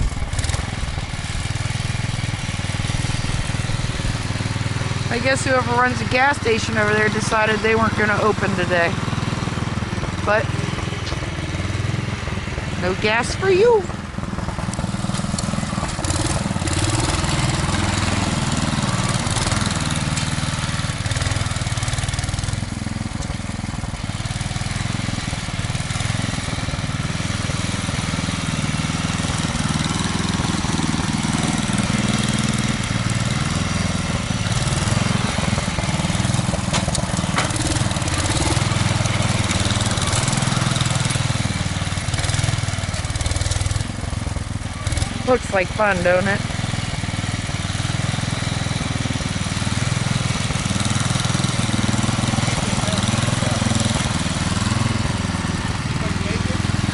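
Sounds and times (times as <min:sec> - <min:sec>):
snow blower engine running: 0:00.0 - 0:56.9.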